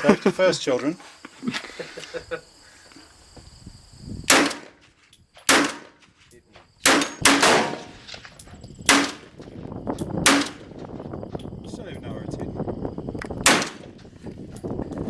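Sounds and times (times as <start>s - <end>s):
rifle gunshots: 4.3s - 4.7s, 5.5s - 5.9s, 6.8s - 8.0s, 8.9s - 9.3s, 10.2s - 10.7s, 13.4s - 13.9s.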